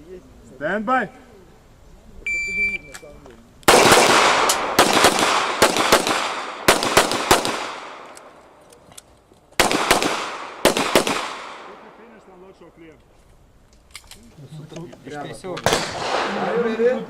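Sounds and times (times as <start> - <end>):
pistol shots with echo: 3.7 - 8.3, 9.6 - 12.0, 15.6 - 16.7.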